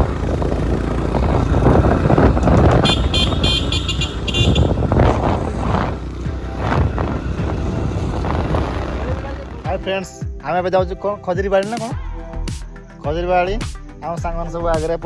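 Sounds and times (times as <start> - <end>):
motorcycle engines rumbling: 0.0 - 10.1.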